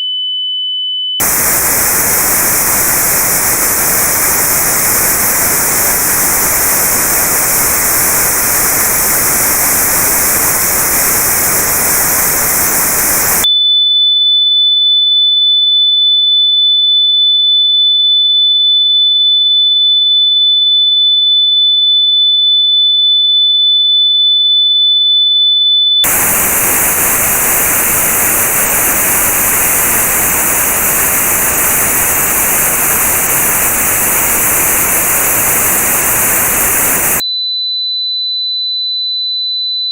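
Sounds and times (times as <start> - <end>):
notched white noise hiss: 1.2 - 13.4, 26.0 - 37.2
steady high pure tone: 1.2 - 13.5, 26.0 - 37.2.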